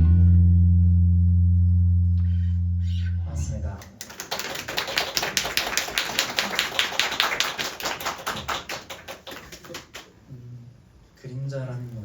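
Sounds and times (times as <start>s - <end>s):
audience clapping: 3.8s - 10.2s.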